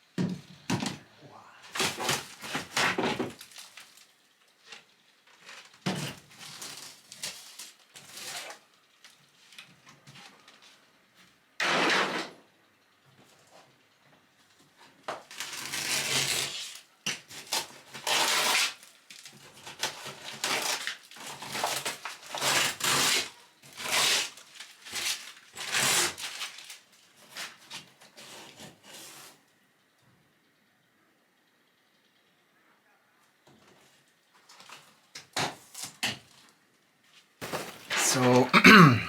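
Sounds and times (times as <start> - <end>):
scraping and crunching demolition: 1.7 - 10.6, 15.3 - 28.8, 37.4 - 39.0.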